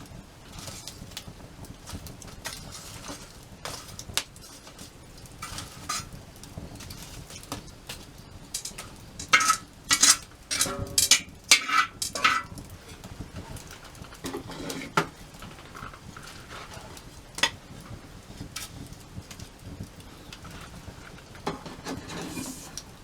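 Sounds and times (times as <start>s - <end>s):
metal clinking and clattering: 8.5s - 16.7s.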